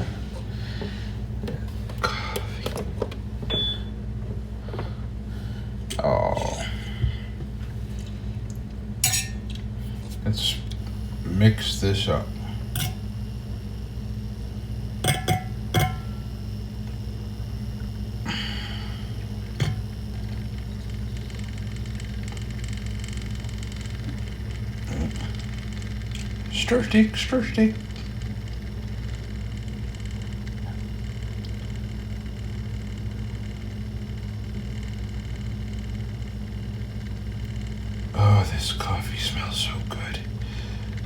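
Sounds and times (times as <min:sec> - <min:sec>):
steady low hum: 0:00.0 - 0:41.0
cup and utensils clinking: 0:09.0 - 0:09.5.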